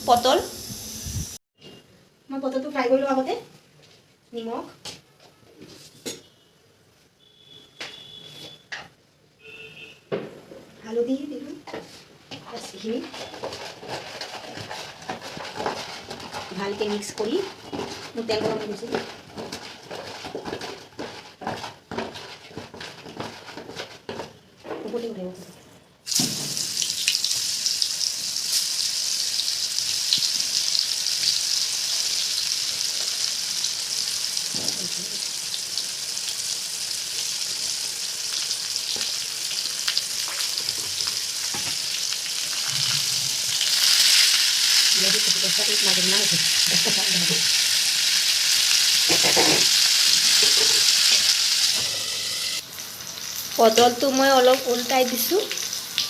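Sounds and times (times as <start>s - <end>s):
vegetables sizzling in oil: 0.0s - 1.4s, 12.4s - 23.6s, 26.1s - 56.0s.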